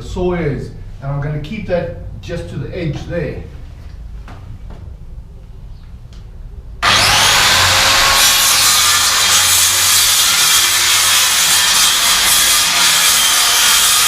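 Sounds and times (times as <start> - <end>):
circular saw cutting wood: 6.8 - 14.0.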